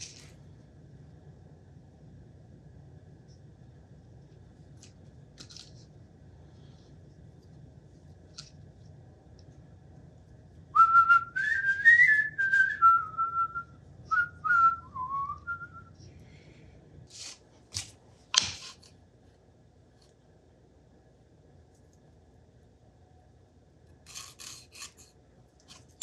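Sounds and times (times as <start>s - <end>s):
person whistling a tune: 10.8s - 15.9s.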